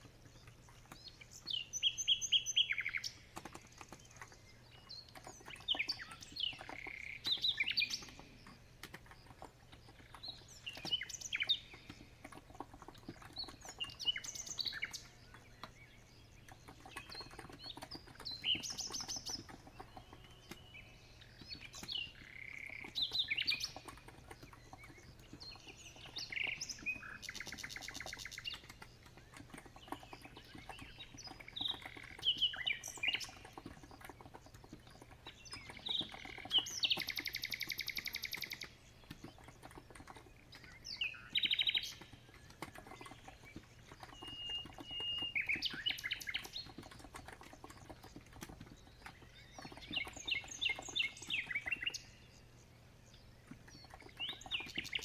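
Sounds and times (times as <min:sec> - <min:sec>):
songbirds singing: 0:00.0 - 0:55.0
keyboard typing clicks: 0:16.4 - 0:51.9.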